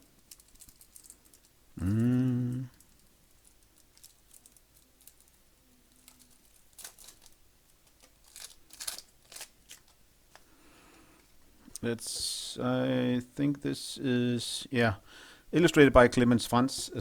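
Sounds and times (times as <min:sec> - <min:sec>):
plastic packaging crinkling: 0:00.0 - 0:01.6, 0:02.8 - 0:10.0.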